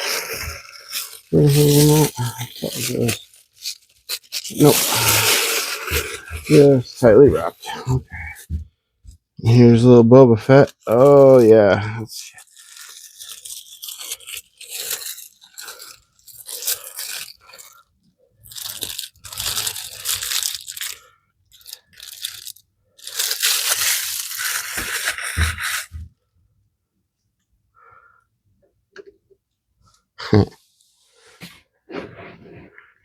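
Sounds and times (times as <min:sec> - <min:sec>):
packaging wrap crackling: 0:00.0 - 0:08.5, 0:10.6 - 0:26.0.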